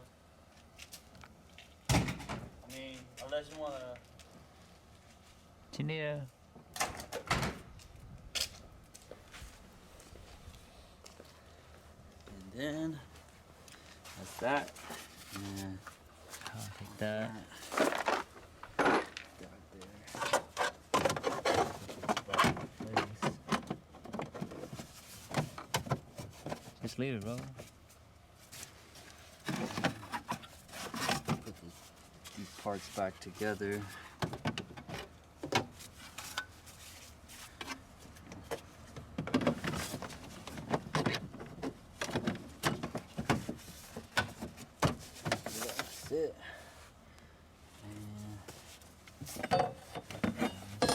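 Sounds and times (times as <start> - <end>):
car parts clicking and scraping: 14.0 - 46.1, 48.5 - 50.9
tools knocking and clattering: 49.2 - 50.9.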